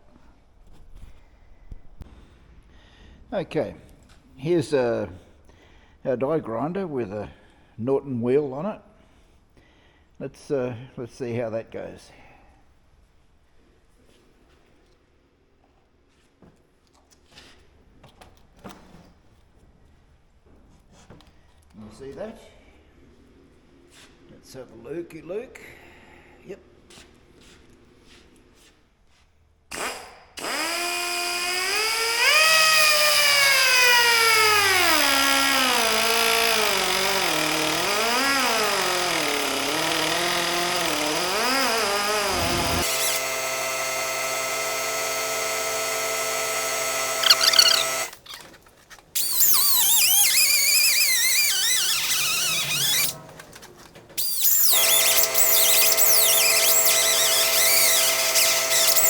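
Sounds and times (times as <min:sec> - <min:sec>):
die grinder whining: 0:30.4 - 0:48.6, 0:49.2 - 0:53.2, 0:54.2 - 0:59.0.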